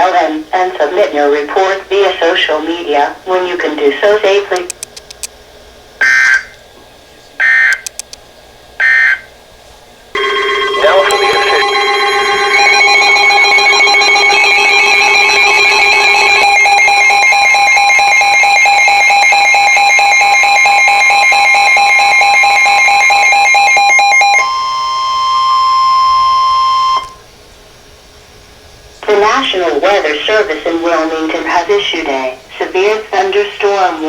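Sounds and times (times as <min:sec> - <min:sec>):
electronic alert tones: 0:10.2 - 0:25.2.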